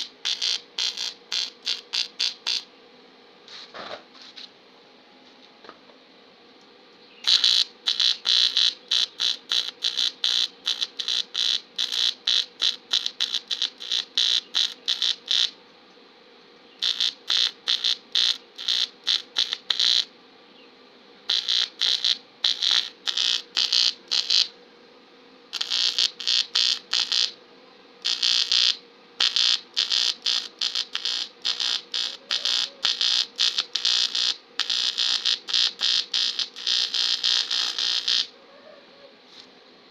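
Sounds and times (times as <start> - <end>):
welding arc buzzing: 0.0 - 2.7, 7.2 - 15.6, 16.8 - 20.1, 21.3 - 24.6, 25.5 - 27.4, 28.0 - 38.3.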